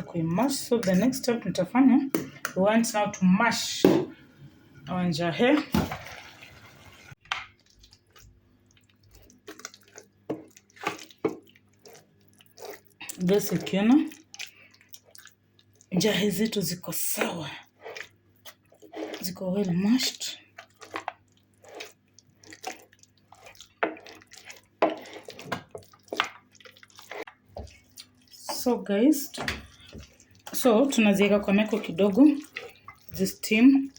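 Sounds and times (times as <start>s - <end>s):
beans being mashed in a pot: 7.2s - 33.9s.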